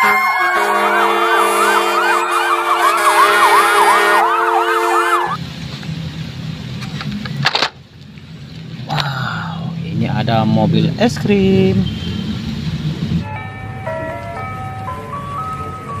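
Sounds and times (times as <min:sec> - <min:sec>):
toy siren wailing: 0:00.0 - 0:05.4.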